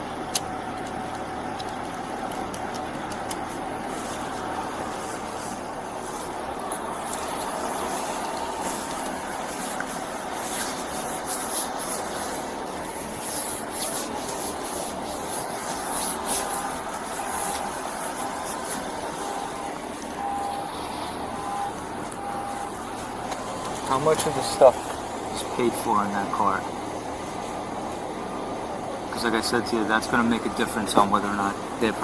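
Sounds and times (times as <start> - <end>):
clothing rubbing on microphone: 3.3 - 20.8
faint repeating beep: 20.2 - 20.7, 21.3 - 22.8.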